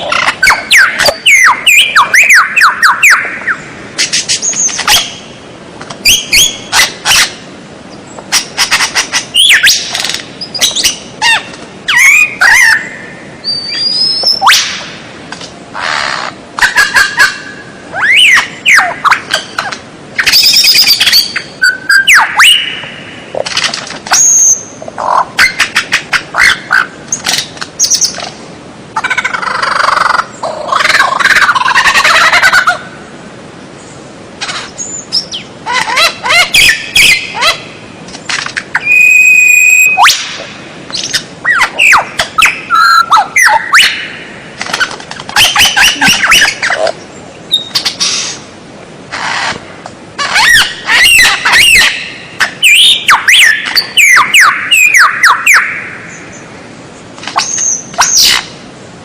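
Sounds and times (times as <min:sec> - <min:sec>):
bird singing whistles and chatter: 0:13.5 - 0:14.7, 0:38.8 - 0:40.3.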